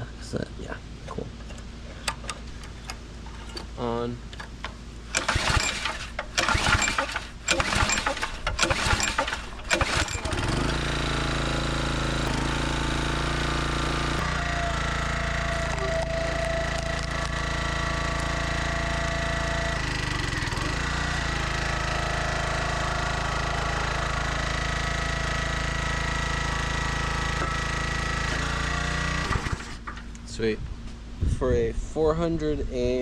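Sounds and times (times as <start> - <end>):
small gasoline engine running: 5.1 - 30.1.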